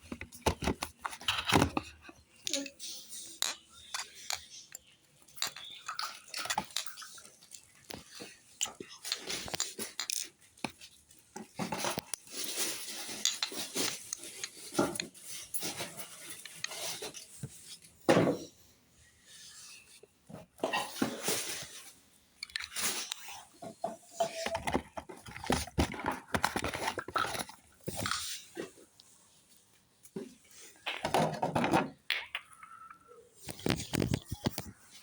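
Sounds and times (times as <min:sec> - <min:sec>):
objects tapping and clinking: 0:00.1 - 0:07.3, 0:13.1 - 0:15.1, 0:22.4 - 0:28.2.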